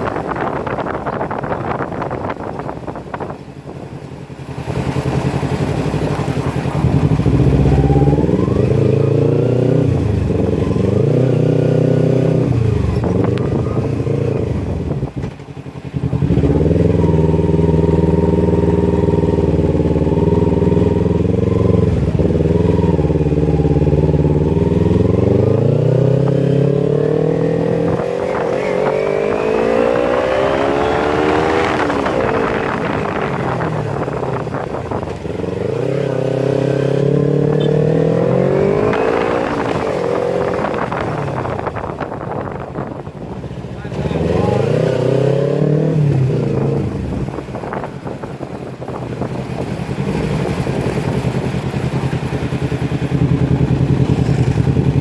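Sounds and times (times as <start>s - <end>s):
motorcycle engine revving: 0.0s - 55.0s.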